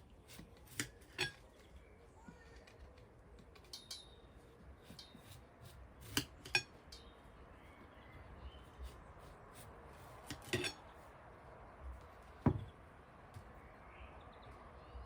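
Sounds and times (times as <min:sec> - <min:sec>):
dishes and cutlery clinking: 0:00.7 - 0:01.7, 0:06.0 - 0:07.2, 0:10.2 - 0:10.8.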